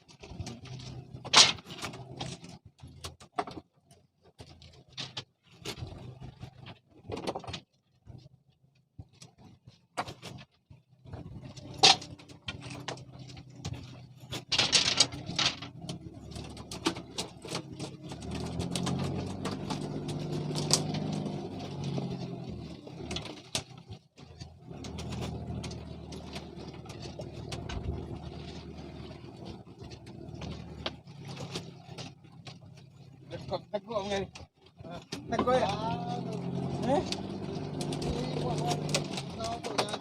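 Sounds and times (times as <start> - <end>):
gear knocking and clattering: 0.0 - 40.0
engine humming: 8.9 - 40.0.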